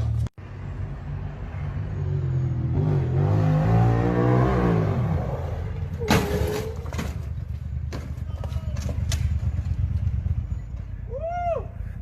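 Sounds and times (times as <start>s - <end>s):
off-road vehicle engine revving: 2.3s - 6.1s.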